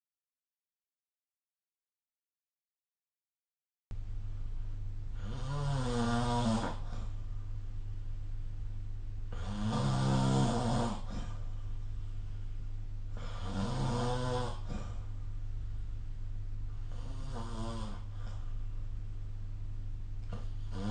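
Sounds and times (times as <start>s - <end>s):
steady low hum: 3.9s - 20.9s
person snoring: 5.2s - 7.2s, 9.3s - 11.5s, 13.1s - 15.2s, 16.7s - 18.6s, 20.3s - 20.9s.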